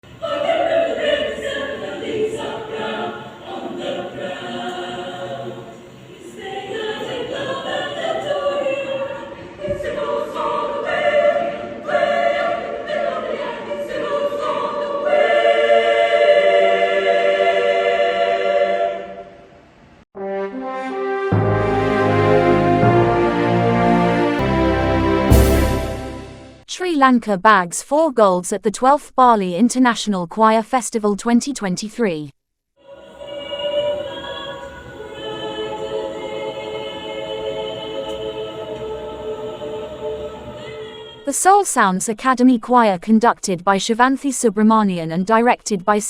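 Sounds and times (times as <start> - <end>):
choir singing: 0.0 - 19.5, 20.2 - 26.6, 32.8 - 41.3.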